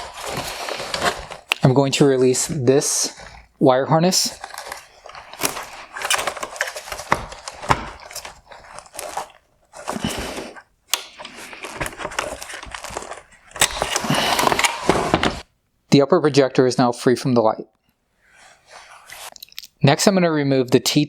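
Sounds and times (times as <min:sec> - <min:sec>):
plastic parts rustling and scraping: 0:00.0 - 0:15.5, 0:18.3 - 0:19.5.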